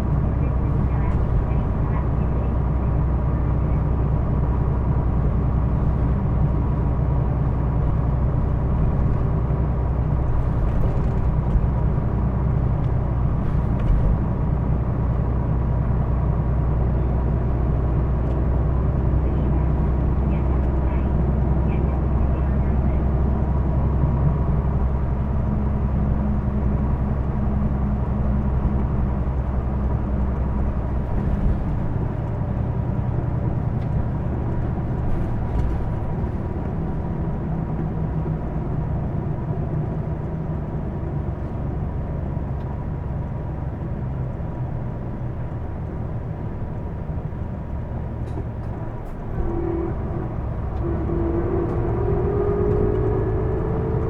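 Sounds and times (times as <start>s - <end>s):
bus diesel engine running: 0.0s - 54.0s.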